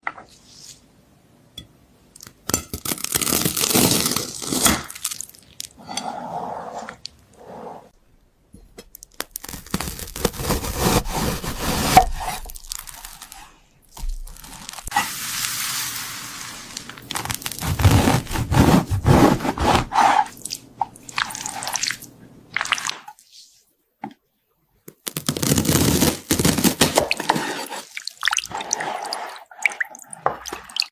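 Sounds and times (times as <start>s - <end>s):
knife slicing through food: 9.4s - 12.5s, 17.6s - 20.3s.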